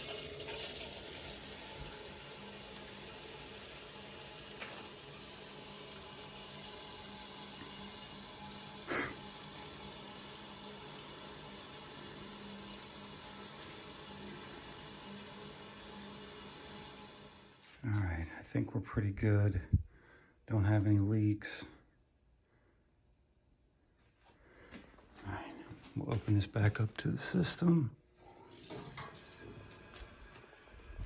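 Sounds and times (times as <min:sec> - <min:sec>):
water hissing through a valve: 0:00.0 - 0:17.8, 0:28.2 - 0:31.0.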